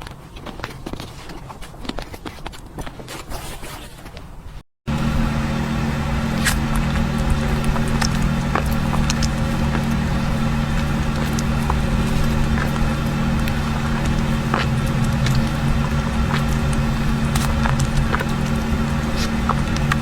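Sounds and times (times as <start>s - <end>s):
low mechanical hum: 0.0s - 20.0s
small clicks and crackles: 6.0s - 20.0s.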